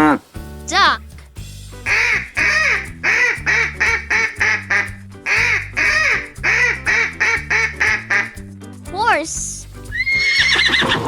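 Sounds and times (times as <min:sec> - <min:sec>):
background music: 0:00.0 - 0:11.0
duck quacking: 0:01.9 - 0:08.4.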